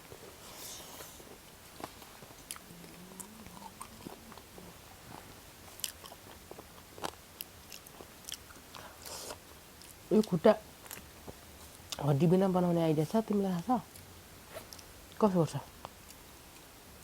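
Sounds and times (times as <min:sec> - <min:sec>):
chewing and biting: 0:00.5 - 0:10.0.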